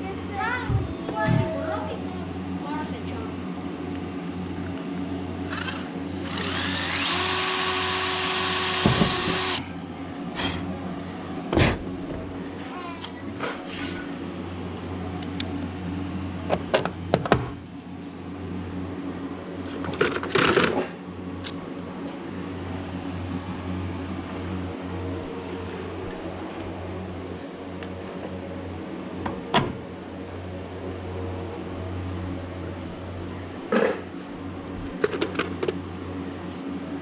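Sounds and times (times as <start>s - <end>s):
steady low hum: 0.0s - 19.8s
power drill whining: 5.4s - 9.7s.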